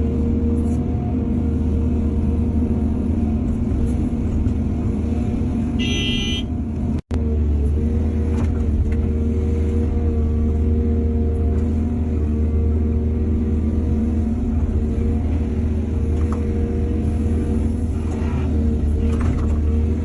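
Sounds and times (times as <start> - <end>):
excavator diesel engine running: 0.0 - 20.0
short high-pitched toot: 5.8 - 6.5.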